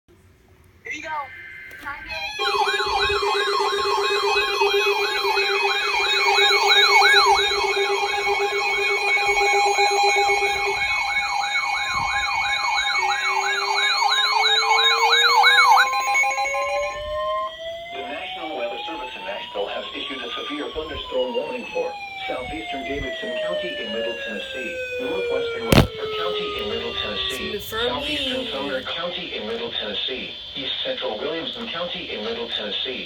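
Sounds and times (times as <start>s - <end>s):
electronic siren warbling: 1.2s - 28.9s
steady electronic tones: 1.3s - 17.5s, 22.9s - 28.9s
tone sliding upward in pitch: 2.1s - 17.5s, 23.4s - 28.9s.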